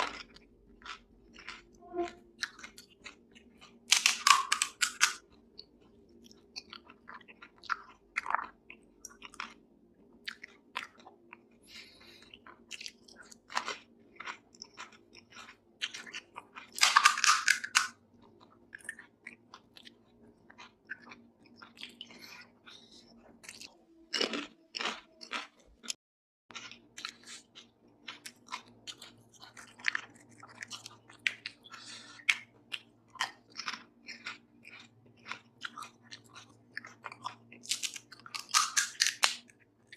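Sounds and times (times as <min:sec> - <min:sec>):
chewing and wet mouth clicks: 0:00.0 - 0:01.8, 0:02.4 - 0:39.9
crisp crunches of biting: 0:02.4 - 0:05.2, 0:12.8 - 0:18.0, 0:26.5 - 0:39.5.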